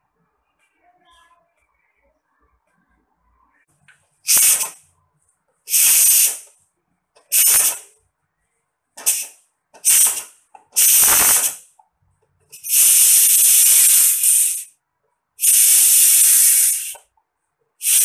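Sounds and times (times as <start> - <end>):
pressure cooker hissing steam: 4.2 - 4.8, 5.7 - 6.5, 7.2 - 7.9, 9.0 - 11.7, 12.5 - 14.7, 15.4 - 17.1, 17.8 - 18.0.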